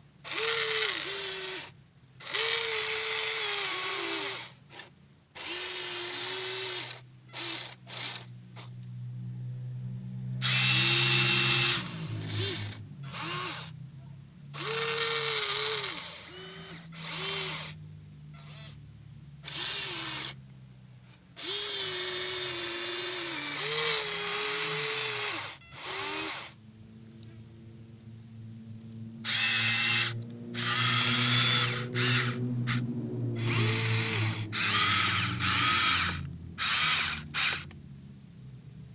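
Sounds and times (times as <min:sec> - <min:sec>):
faint low hum: 0:00.0 - 0:38.9
small electric motors whirring: 0:00.2 - 0:08.9, 0:10.4 - 0:13.8, 0:14.5 - 0:17.8, 0:18.4 - 0:18.8, 0:19.4 - 0:20.5, 0:21.1 - 0:26.6, 0:29.2 - 0:37.8.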